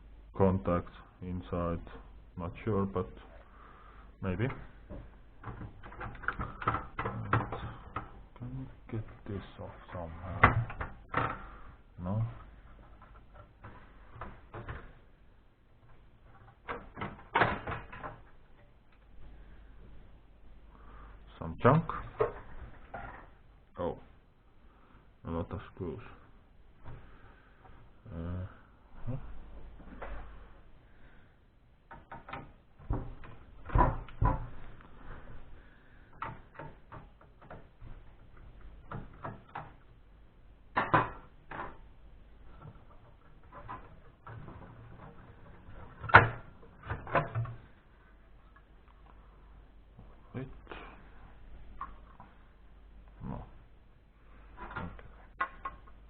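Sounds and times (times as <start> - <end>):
computer parts knocking and clattering: 4.3 - 15.1, 15.8 - 19.4, 21.7 - 23.4, 31.9 - 40.1, 40.7 - 47.9, 54.5 - 56.0.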